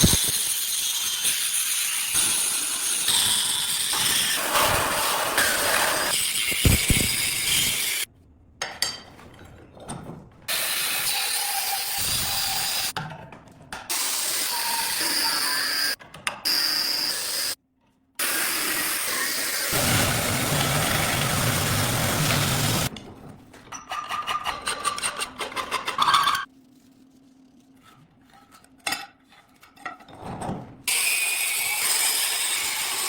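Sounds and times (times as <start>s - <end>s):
power tool grinding steel: 0.0s - 8.1s, 10.5s - 12.9s, 13.9s - 17.6s.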